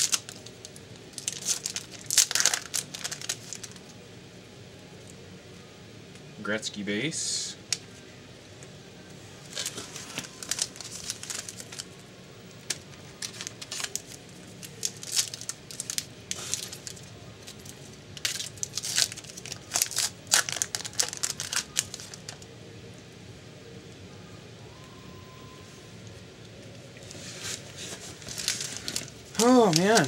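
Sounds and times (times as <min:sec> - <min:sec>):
card pack wrappers crinkling and tearing: 0:00.0 - 0:03.9, 0:09.4 - 0:12.0, 0:12.6 - 0:22.5, 0:27.0 - 0:30.0.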